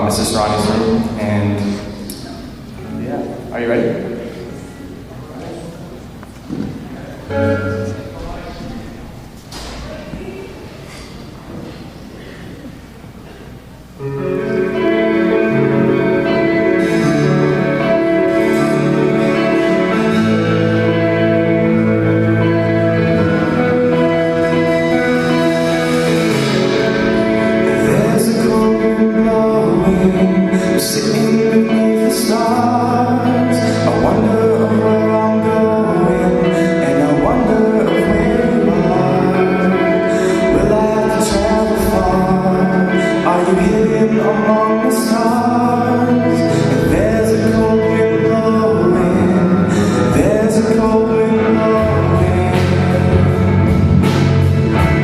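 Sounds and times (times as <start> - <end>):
man singing: 0.0 - 2.1, 14.3 - 55.0
guitar chords: 0.0 - 55.0.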